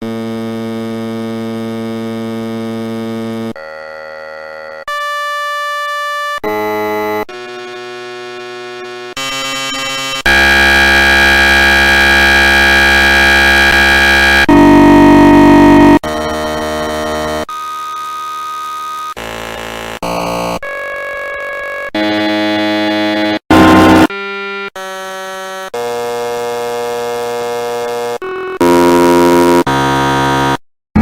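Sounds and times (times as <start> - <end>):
buzzy electronic beeps: 9.2 - 24.1.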